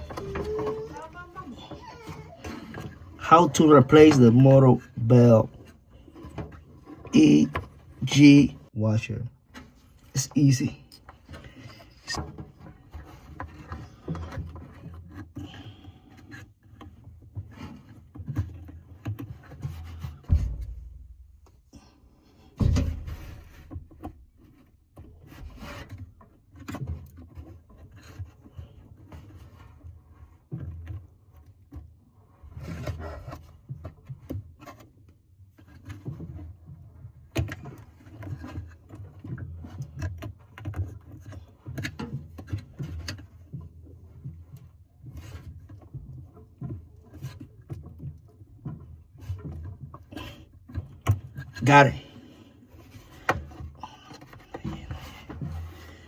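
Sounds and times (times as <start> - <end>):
knocks and thumps: 0.0 - 8.7, 17.4 - 26.1
belt rubbing and scraping: 9.6 - 31.4, 32.1 - 48.0, 48.6 - 56.0.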